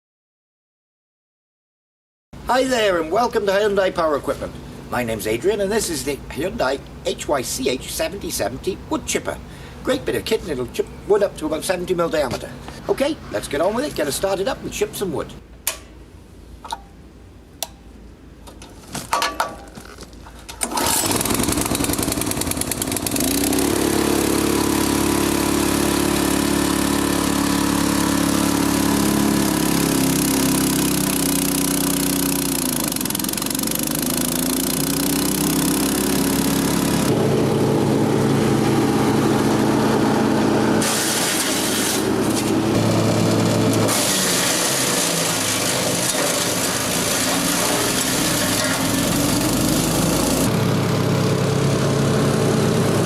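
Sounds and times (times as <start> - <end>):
wood chipper engine running: 20.6 - 53.0.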